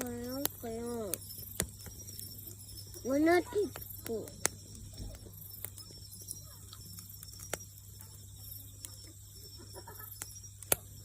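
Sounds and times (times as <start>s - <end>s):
bonfire crackling: 0.0s - 11.0s
fire low rumble: 0.0s - 11.0s
sharp pops from fire: 0.0s - 11.0s.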